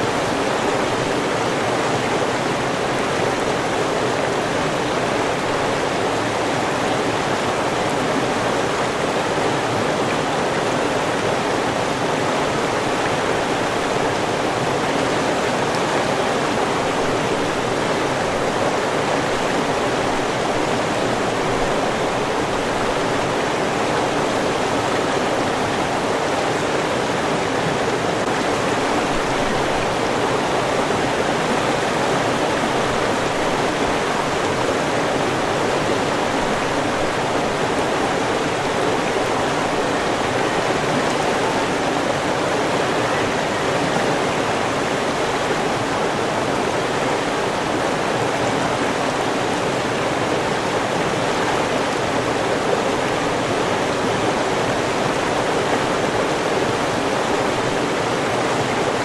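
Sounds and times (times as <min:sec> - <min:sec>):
river water rushing: 0:00.0 - 0:59.0.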